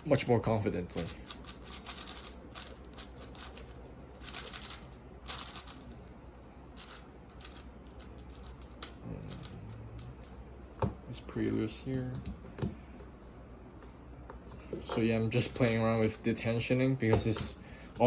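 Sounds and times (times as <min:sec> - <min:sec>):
speed cube clicking: 0:01.3 - 0:05.8.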